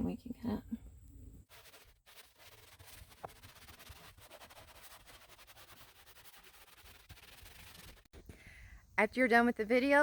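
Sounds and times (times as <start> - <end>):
cloth scrubbing a seat: 1.5 - 8.1.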